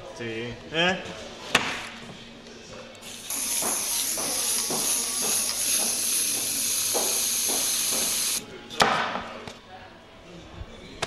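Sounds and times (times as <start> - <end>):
faint music with regular beat: 1.3 - 9.4
loud steady hiss: 3.0 - 8.4.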